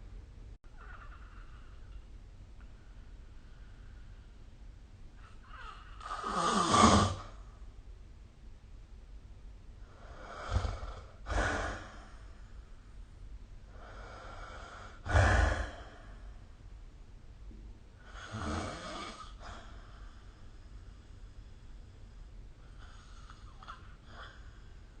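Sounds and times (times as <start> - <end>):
person snoring: 6.0 - 7.3, 10.0 - 12.2, 18.1 - 19.6.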